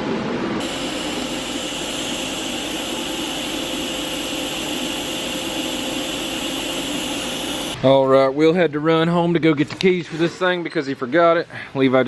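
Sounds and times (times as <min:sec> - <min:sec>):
faint high whine: 0:00.5 - 0:07.8
cutting torch hissing rush: 0:00.6 - 0:07.8.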